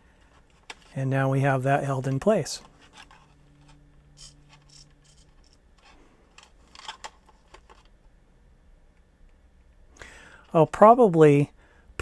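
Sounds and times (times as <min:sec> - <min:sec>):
faint low hum: 0:00.0 - 0:12.0
plastic parts clicking: 0:02.6 - 0:08.0.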